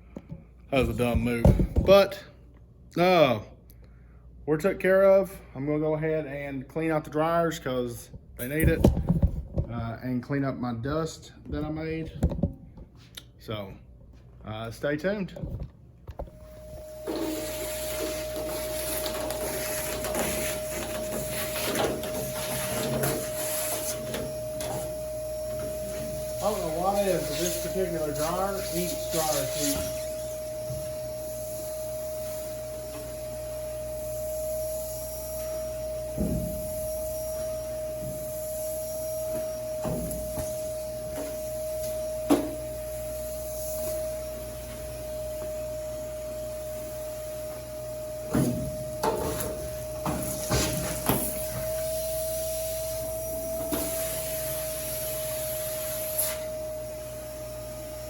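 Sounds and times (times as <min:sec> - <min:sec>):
machine hum with steady tone: 0:00.0 - 0:58.0
utility vacuum whining: 0:16.1 - 0:58.0.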